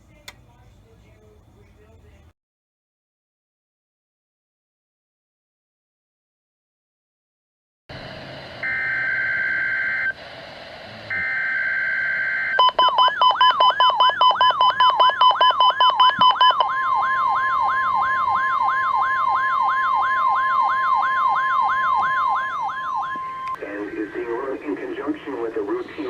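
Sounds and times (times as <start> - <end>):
siren sweeping upward: 8.6 - 10.2, 11.1 - 23.6
single-pitch alarm tone: 11.1 - 23.6.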